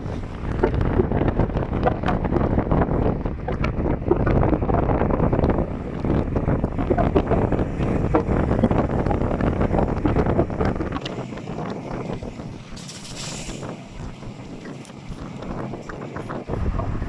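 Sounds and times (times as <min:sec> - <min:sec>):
wind buffeting microphone: 0:00.0 - 0:17.0
brief hiss: 0:12.8 - 0:13.8.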